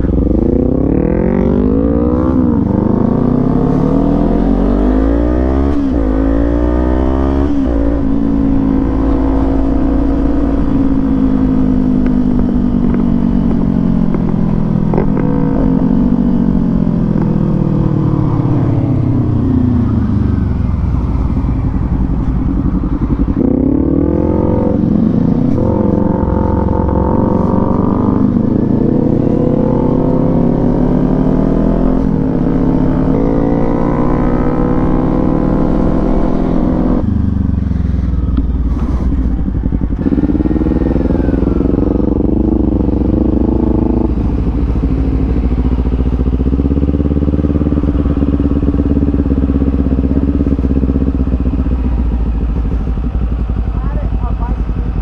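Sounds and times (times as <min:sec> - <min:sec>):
motorcycle engine accelerating: 0:00.0 - 0:55.0.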